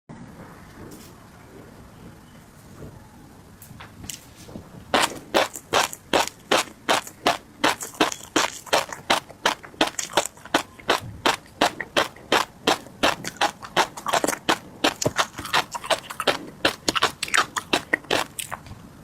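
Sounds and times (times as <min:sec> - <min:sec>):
chewing fish roe popping: 0:04.9 - 0:18.7.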